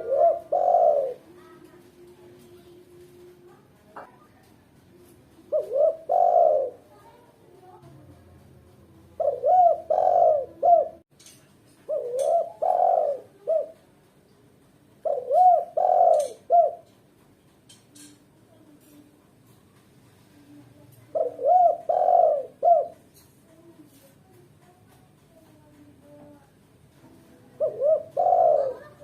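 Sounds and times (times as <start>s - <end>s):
dove cooing: 0.0s - 2.2s, 5.4s - 7.1s, 9.1s - 11.0s, 11.9s - 13.8s, 15.0s - 17.0s, 21.0s - 23.7s, 27.1s - 29.0s.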